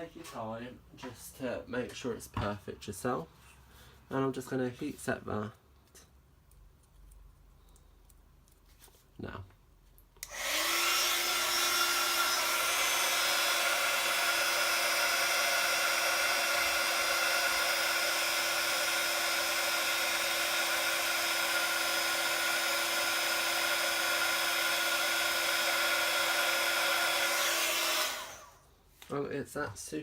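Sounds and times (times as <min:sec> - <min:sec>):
heat tool blowing hot air: 0:10.2 - 0:28.6.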